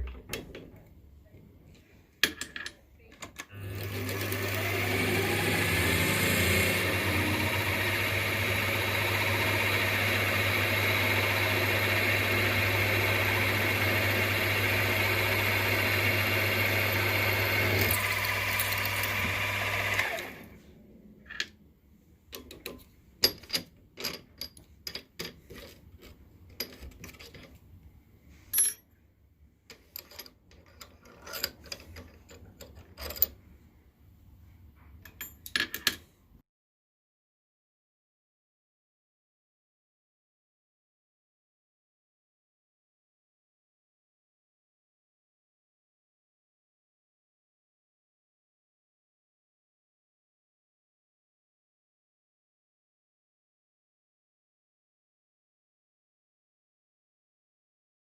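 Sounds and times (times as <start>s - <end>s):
milling machine humming: 3.6s - 20.4s.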